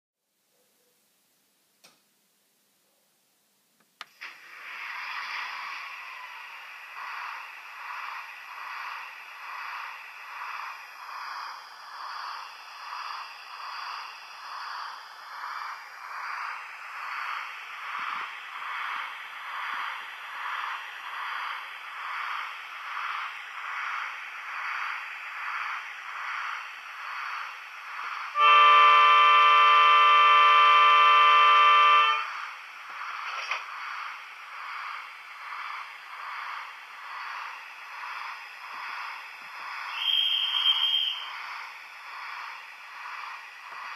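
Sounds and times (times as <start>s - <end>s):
click: 1.8s - 2.1s, 3.8s - 4.4s
model diesel engine throbbing: 4.5s - 43.9s
multi-tone horn: 28.4s - 32.3s.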